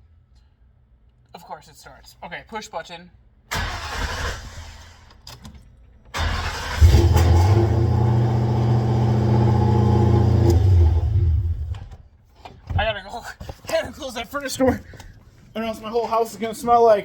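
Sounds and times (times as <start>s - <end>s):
car engine cranking: 3.5s - 12.0s
car engine idling: 6.2s - 11.9s.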